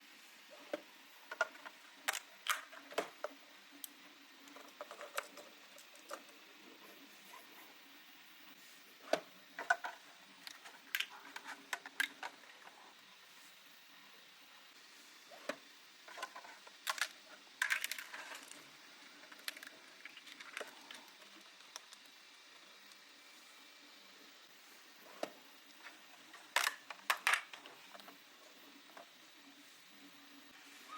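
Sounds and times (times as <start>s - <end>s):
plastic parts clicking and rattling: 0.7s - 6.4s, 9.0s - 12.8s, 15.5s - 22.2s, 25.2s - 28.2s.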